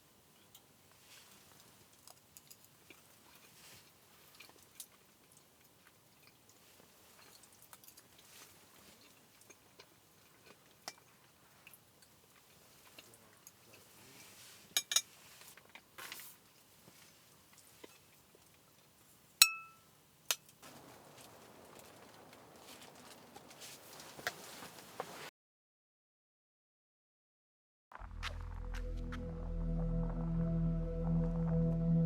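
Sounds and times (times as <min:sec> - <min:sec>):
quiet chewing: 0:00.4 - 0:14.6, 0:15.2 - 0:19.2, 0:20.6 - 0:25.2
cutlery clinking on a dish: 0:14.7 - 0:15.1, 0:19.4 - 0:19.8.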